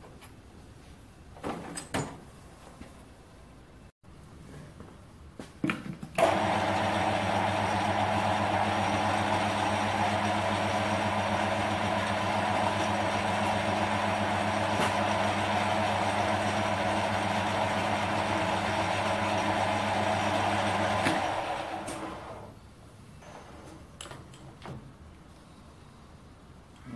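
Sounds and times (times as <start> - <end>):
lathe motor humming: 6.2 - 22.5.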